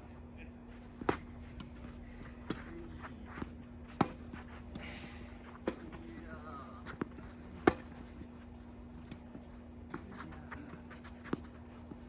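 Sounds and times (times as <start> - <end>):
tennis ball struck: 1.0 - 4.9, 5.6 - 10.0.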